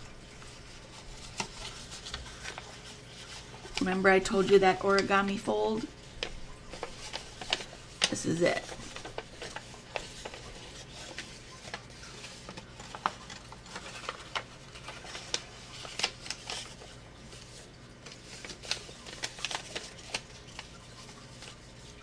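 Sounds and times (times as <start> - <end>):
paper folding and rustling: 0.0 - 22.0.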